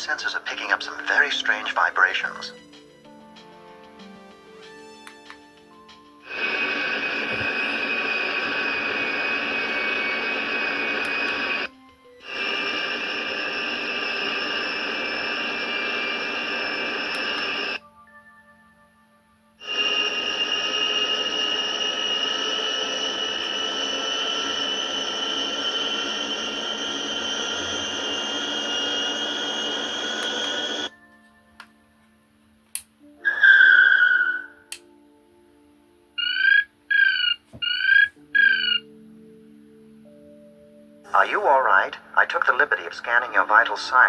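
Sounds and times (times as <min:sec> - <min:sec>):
jet-like rushing with high whine: 0:00.0 - 0:02.4, 0:06.3 - 0:17.8, 0:19.6 - 0:30.9, 0:41.2 - 0:44.0.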